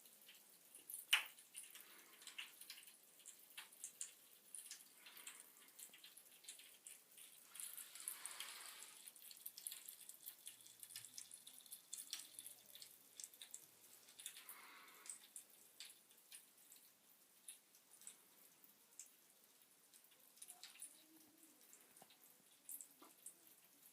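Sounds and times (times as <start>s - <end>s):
bath crackles popping in water: 0.0s - 23.9s
hiss: 7.5s - 9.0s.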